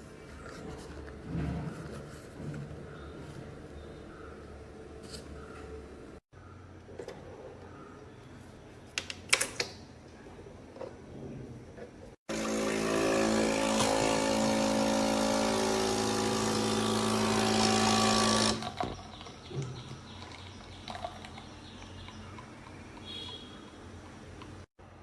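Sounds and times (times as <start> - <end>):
coffee machine pump humming: 12.3 - 24.7.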